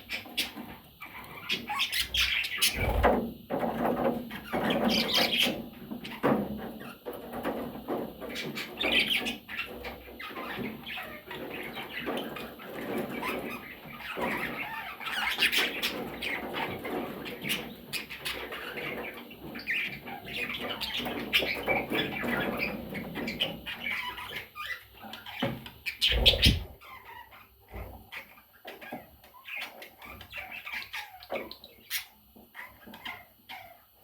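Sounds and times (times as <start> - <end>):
budgerigars chattering and chirping: 0.0 - 3.2, 8.2 - 27.5, 28.1 - 33.8
wing flapping: 2.6 - 3.2, 26.0 - 26.8.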